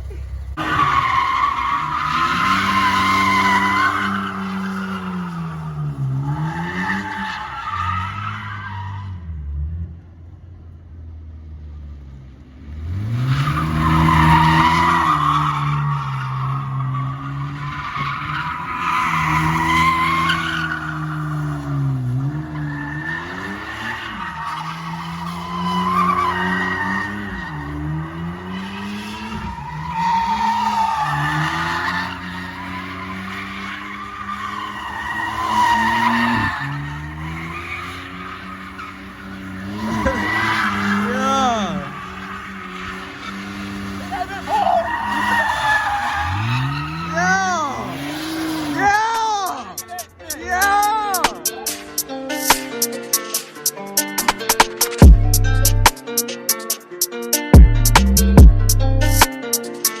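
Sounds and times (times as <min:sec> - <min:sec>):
tyres squealing: 0:00.0 - 0:09.0, 0:13.2 - 0:55.0
car engine revving: 0:00.0 - 0:10.7, 0:11.8 - 0:49.0.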